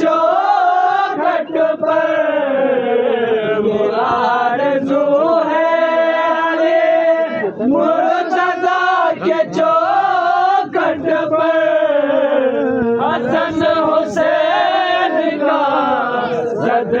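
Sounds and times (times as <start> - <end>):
man singing devotional song: 0.0 - 17.0.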